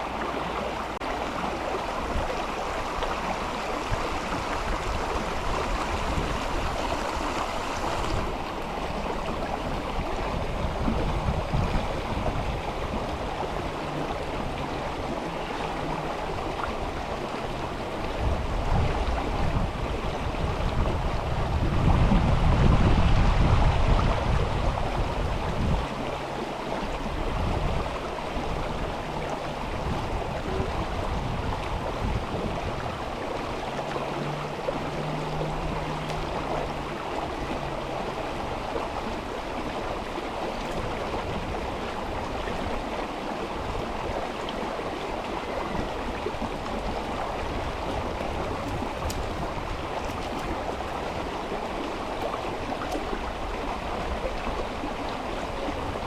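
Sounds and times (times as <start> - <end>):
river water rushing over stones: 0.0 - 56.0.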